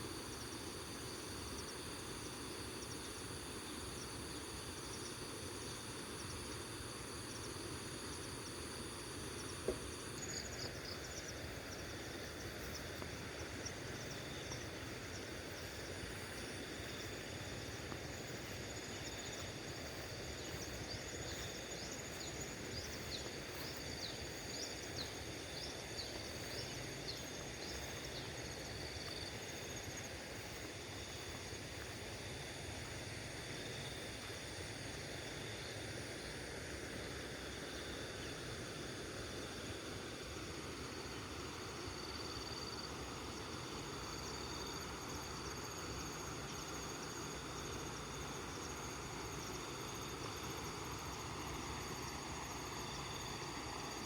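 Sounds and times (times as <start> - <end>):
crickets trilling: 0.0 - 54.0
river water flowing: 0.0 - 54.0.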